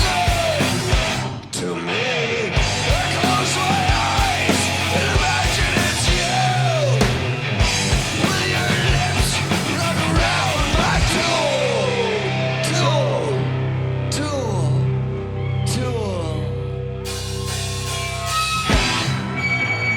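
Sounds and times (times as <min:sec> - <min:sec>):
sustained bass line: 0:00.0 - 0:01.4, 0:02.6 - 0:19.5
punk rock band playing loud: 0:00.0 - 0:14.0, 0:17.0 - 0:19.9
drum hits: 0:02.6 - 0:11.2.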